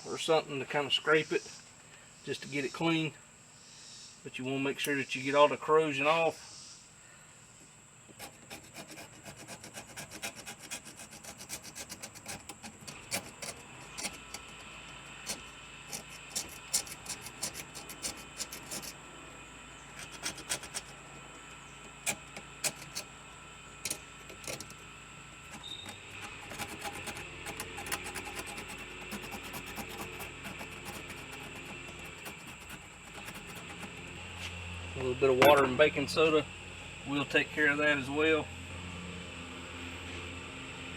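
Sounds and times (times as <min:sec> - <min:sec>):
steady background hum: 0:00.0 - 0:40.9
tool scraping battery terminal: 0:08.1 - 0:19.1, 0:19.8 - 0:23.2, 0:23.8 - 0:34.6, 0:35.4 - 0:35.7.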